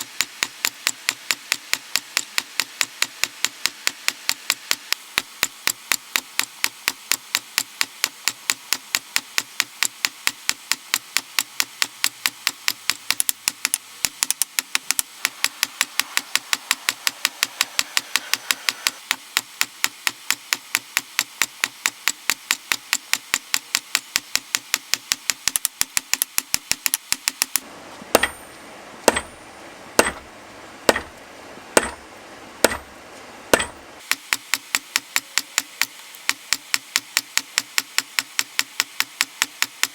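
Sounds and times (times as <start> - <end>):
hammer blows on anvil: 28.1 - 29.4, 30.0 - 30.3, 30.9 - 31.2, 31.8 - 32.0, 32.6 - 32.9, 33.5 - 33.8.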